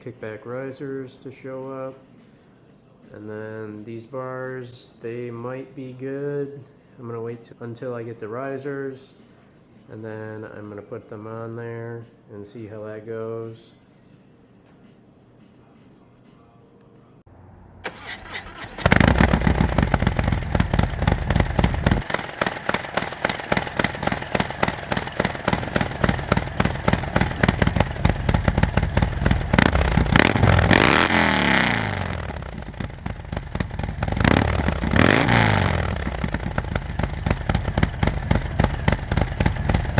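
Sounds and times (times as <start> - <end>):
motorcycle engine revving: 17.8 - 39.9.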